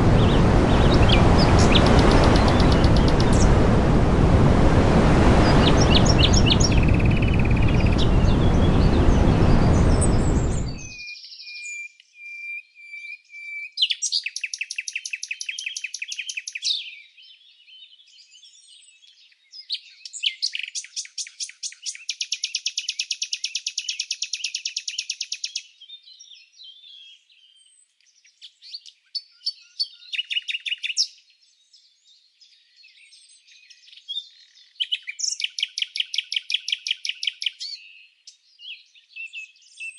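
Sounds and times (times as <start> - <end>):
songbirds trilling: 0.0 - 3.6, 5.4 - 11.4
loud steady rushing noise: 0.0 - 10.9
bird chirps: 0.2 - 3.5, 5.5 - 17.1.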